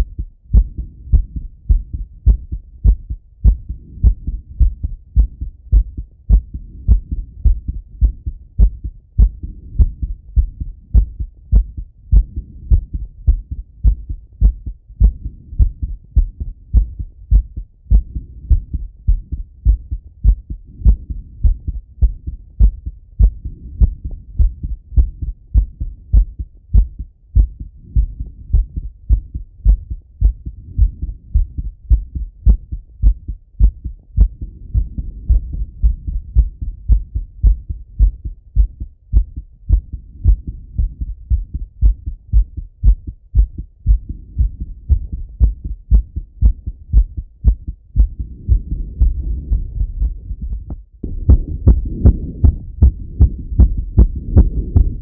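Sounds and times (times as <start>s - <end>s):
heartbeat through stethoscope: 0.0s - 55.0s.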